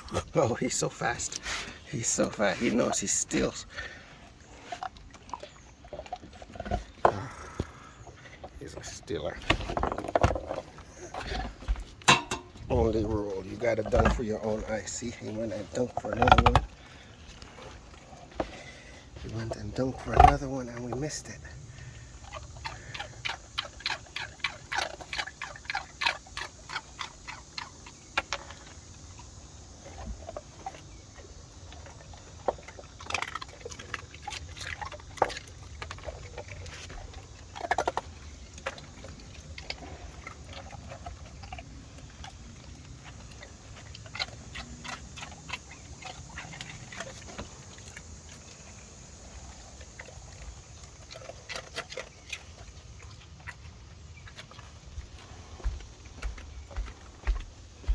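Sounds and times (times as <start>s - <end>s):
dog claws on wooden deck: 9.4s - 12.7s, 15.8s - 21.0s, 50.4s - 57.9s.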